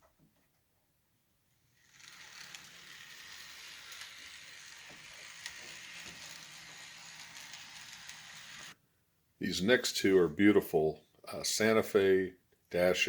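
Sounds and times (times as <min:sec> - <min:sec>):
model train motor whir: 0:01.7 - 0:08.8.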